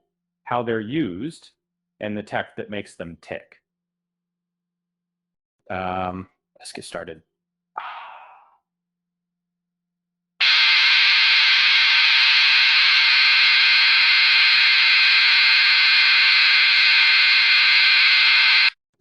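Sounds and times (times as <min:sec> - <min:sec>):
loud static hiss: 0:10.4 - 0:18.7.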